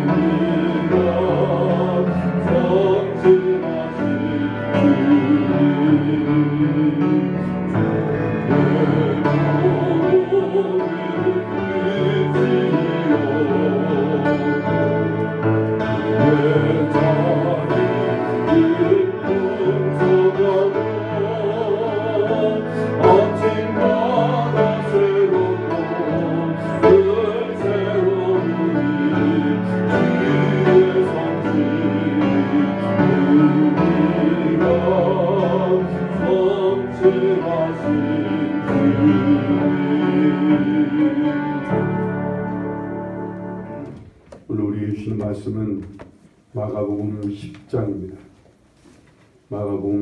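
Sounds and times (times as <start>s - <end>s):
voices singing worship song: 0.0s - 45.7s
instrumental accompaniment: 0.0s - 49.4s.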